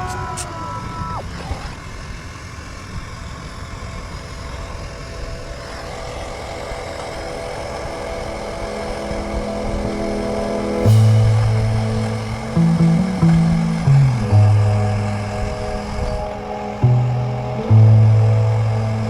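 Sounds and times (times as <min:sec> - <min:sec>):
engine running with low rumble: 0:01.0 - 0:19.0
steady tones: 0:03.8 - 0:19.0.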